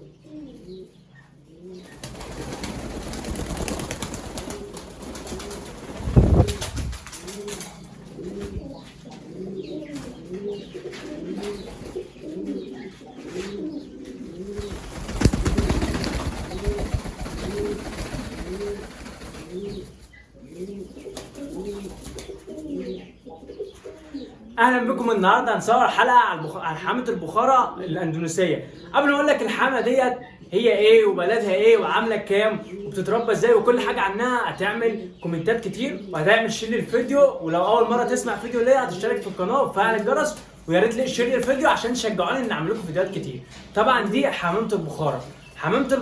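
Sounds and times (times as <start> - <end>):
pigeons cooing: 0.0 - 25.1, 28.6 - 46.0
loud rushing bursts: 5.7 - 7.2.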